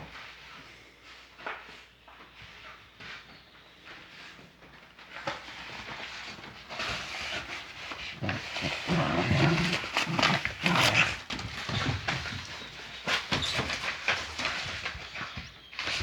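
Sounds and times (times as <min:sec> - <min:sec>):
animal sounds: 0:07.3 - 0:16.0.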